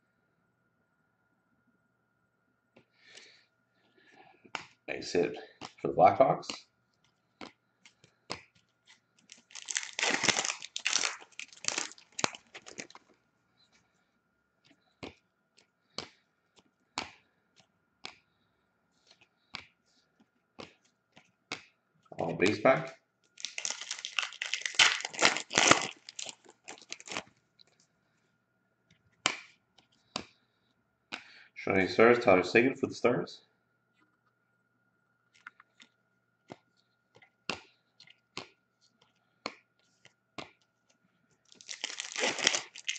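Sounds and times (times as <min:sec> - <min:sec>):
foil wrapper tearing and crinkling: 0:09.2 - 0:13.0, 0:23.4 - 0:27.3, 0:41.5 - 0:42.9.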